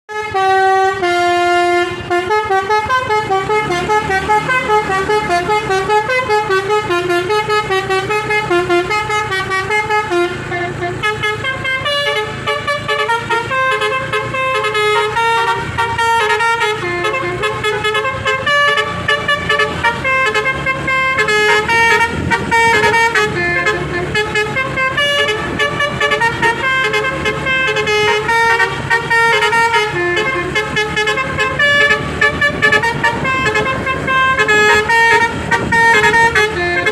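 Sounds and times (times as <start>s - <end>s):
musical air horn melody: 0.1s - 36.9s.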